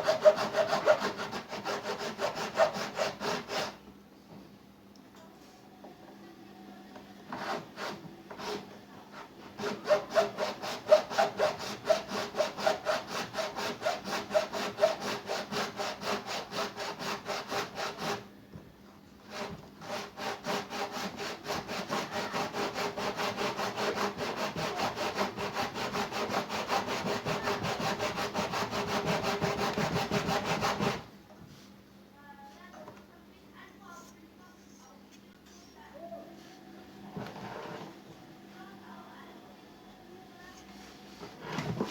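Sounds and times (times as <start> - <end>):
hand saw cutting plastic: 0.0 - 3.8, 9.5 - 18.3, 19.2 - 31.1.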